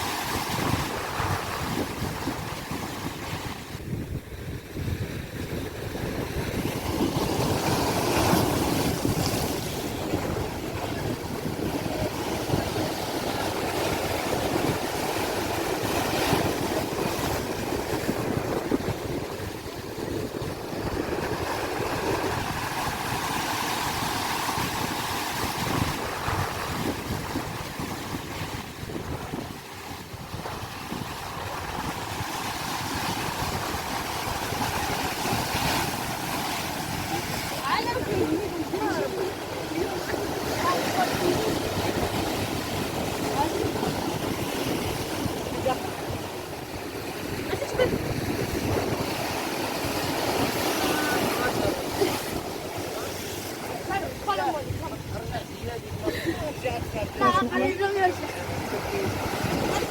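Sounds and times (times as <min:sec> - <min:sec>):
sea waves washing in: 0:00.0 - 0:59.9
wind buffeting microphone: 0:00.0 - 0:59.9.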